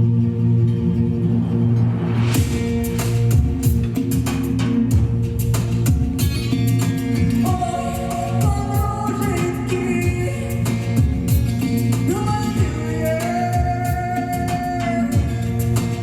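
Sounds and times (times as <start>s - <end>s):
band with drums and bass: 2.4s - 16.0s
woman singing: 7.4s - 15.8s.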